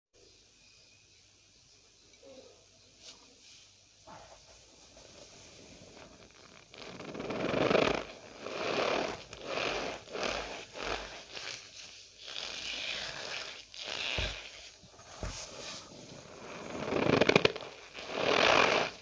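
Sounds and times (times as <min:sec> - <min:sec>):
cornstarch squeaky crunching: 0:06.8 - 0:14.7.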